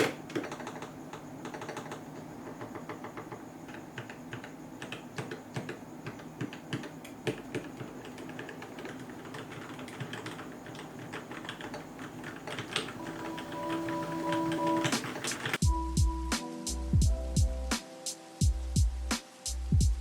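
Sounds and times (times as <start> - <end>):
mechanical keyboard typing: 0.0 - 15.6
background music: 13.0 - 20.0.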